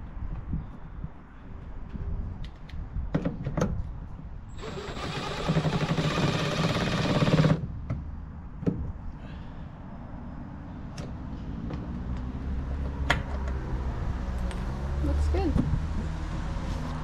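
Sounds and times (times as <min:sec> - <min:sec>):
rapid mechanical rattling: 0:04.6 - 0:07.6.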